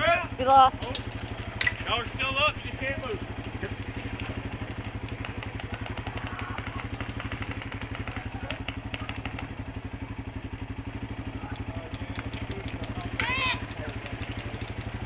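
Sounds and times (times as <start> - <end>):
atv engine idling: 0.0 - 15.0
sharp clicks: 3.2 - 9.6.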